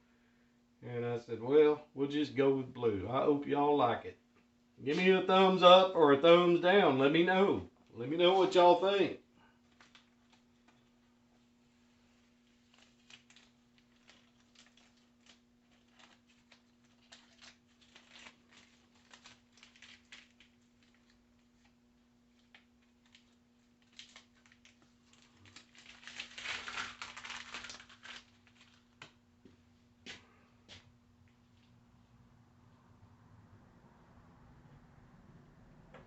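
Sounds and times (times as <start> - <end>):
rustling: 9.4 - 29.2.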